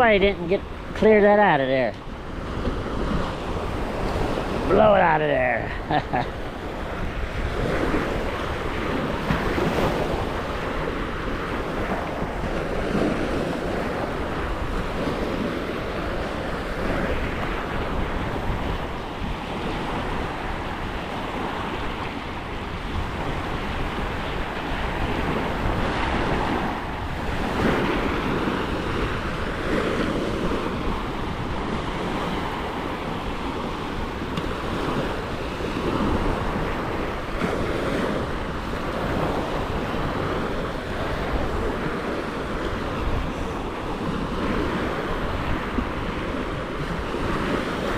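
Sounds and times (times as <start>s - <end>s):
sea waves washing onto beach: 0.0s - 47.9s
wind buffeting microphone: 0.0s - 47.9s.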